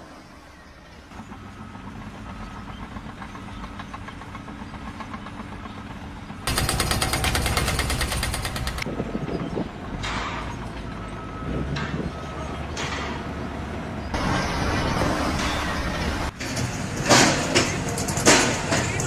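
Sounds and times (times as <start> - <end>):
heavy machinery engine running: 0.2 - 19.0
rapid mechanical hammering: 6.5 - 8.9, 14.1 - 19.0.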